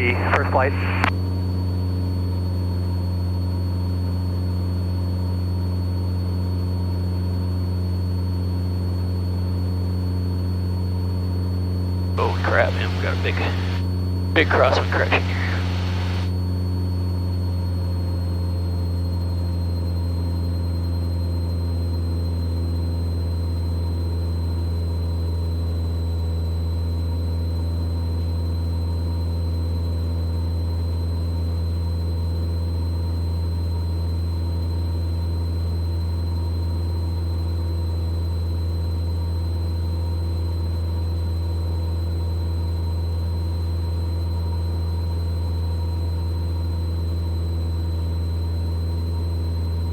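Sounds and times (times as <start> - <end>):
thin high whine: 0.0 - 1.1, 12.2 - 13.8, 14.4 - 16.3.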